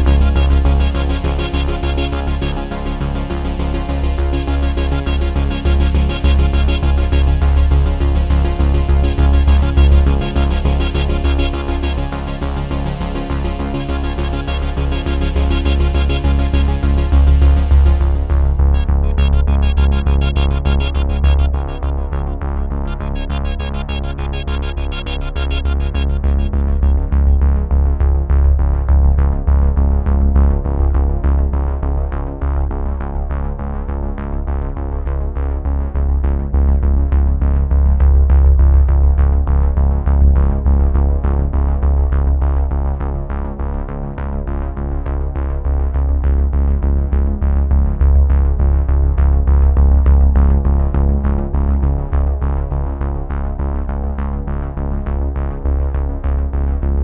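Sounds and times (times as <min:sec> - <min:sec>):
synthesizer music with heavy bass: 0:00.0 - 0:27.8.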